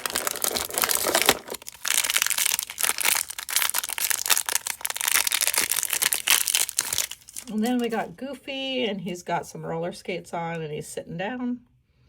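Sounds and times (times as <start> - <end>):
packaging crinkling and tearing: 0.0 - 8.1.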